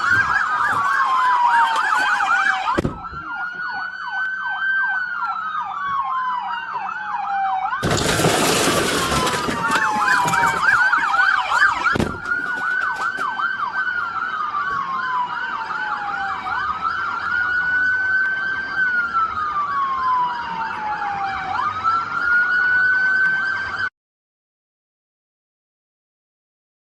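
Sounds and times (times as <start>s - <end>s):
police sirens yelping and wailing: 0.0s - 23.9s
thump: 2.8s - 3.0s, 11.9s - 12.6s.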